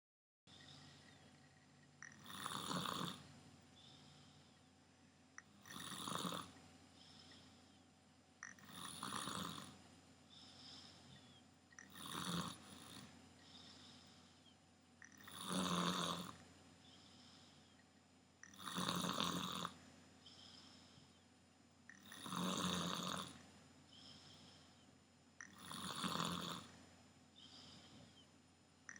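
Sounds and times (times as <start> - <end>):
soft breaths: 0.5 - 18.8, 19.6 - 22.4, 23.2 - 25.8, 26.6 - 28.9
loud snores: 2.0 - 3.2, 5.6 - 6.6, 8.4 - 9.8, 11.8 - 13.1, 15.0 - 16.4, 18.4 - 19.8, 21.9 - 23.4, 25.4 - 26.8.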